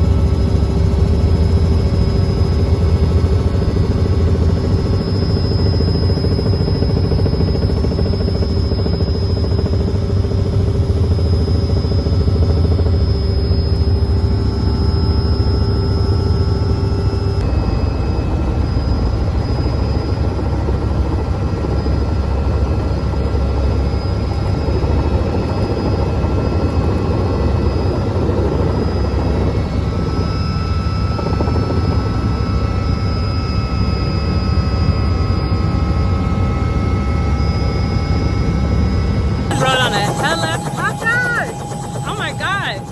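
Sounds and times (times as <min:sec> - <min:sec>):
helicopter rotor and engine drone: 0:00.0 - 0:42.9
thin whining tones: 0:39.5 - 0:42.9.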